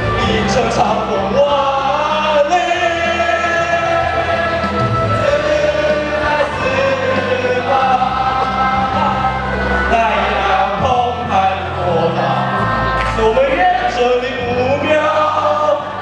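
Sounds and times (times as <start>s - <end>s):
choir singing long notes: 0.0s - 16.0s
low musical accompaniment: 0.0s - 16.0s.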